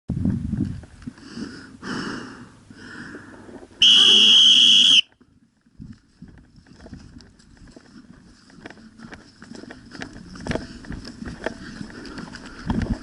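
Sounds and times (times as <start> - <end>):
high-pitched whistle blast: 3.8 - 5.1.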